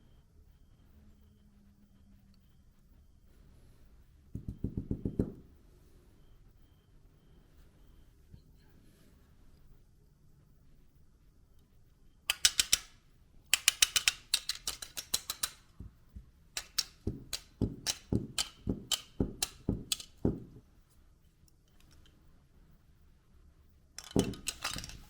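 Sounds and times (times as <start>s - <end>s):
sharp hard clicks: 12.3s - 15.8s, 16.6s - 20.6s.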